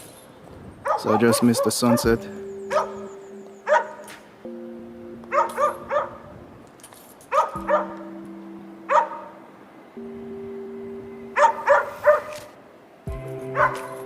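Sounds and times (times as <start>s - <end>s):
dog barking: 0.8s - 3.0s, 3.7s - 4.1s, 5.3s - 6.2s, 7.3s - 8.0s, 8.9s - 9.3s, 11.4s - 12.4s, 13.6s - 14.0s
background music of sustained chords: 1.4s - 14.0s.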